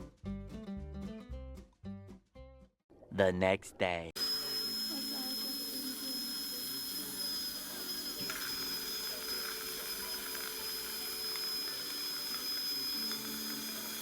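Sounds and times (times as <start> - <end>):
dental equipment whining: 4.2 - 14.0
hiss: 4.2 - 14.0.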